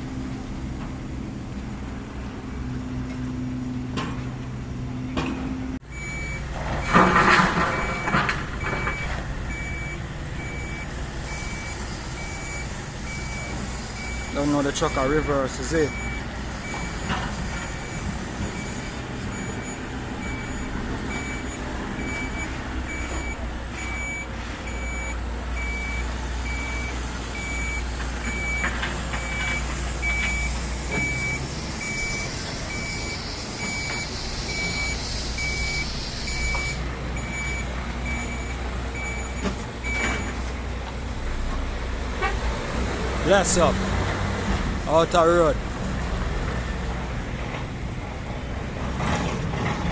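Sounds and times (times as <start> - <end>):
diesel engine rumble: 0.0 - 49.9
truck reversing alarm beeping: 5.8 - 40.8
hiss: 31.4 - 36.8.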